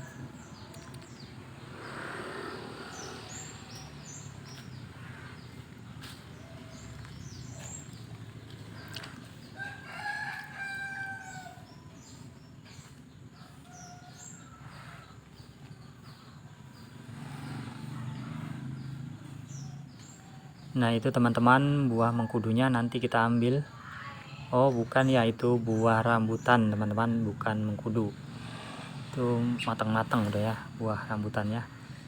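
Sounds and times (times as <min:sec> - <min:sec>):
small birds chirping: 0:00.0 - 0:32.0
rooster crowing: 0:09.5 - 0:12.3.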